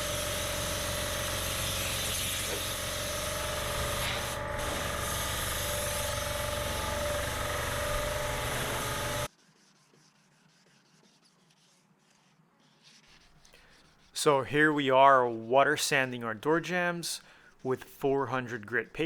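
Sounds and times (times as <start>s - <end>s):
power sander whining: 0.0s - 9.3s.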